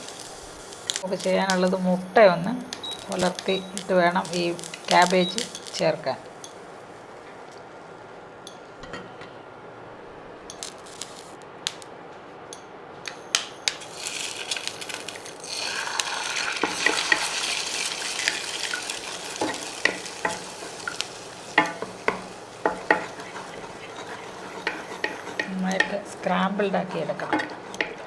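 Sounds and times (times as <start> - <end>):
eggs sizzling in oil: 0.0 - 7.6, 10.5 - 11.4, 13.1 - 28.0
spatula scraping a pan: 14.1 - 28.0.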